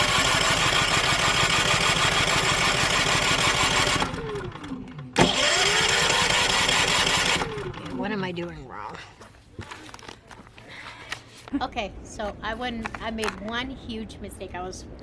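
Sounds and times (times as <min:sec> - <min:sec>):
generator starter cranking: 0:00.0 - 0:08.2.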